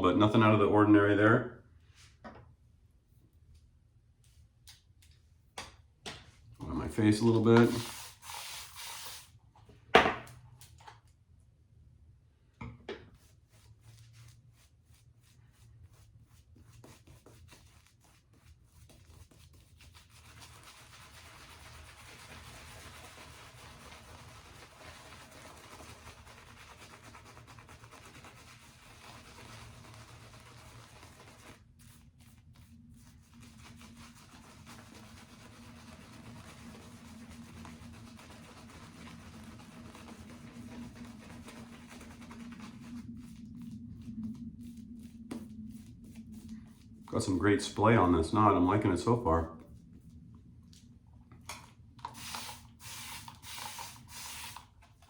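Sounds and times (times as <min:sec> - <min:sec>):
shaving brush rubbing lather: 0:07.0 - 0:09.4, 0:13.2 - 0:49.7.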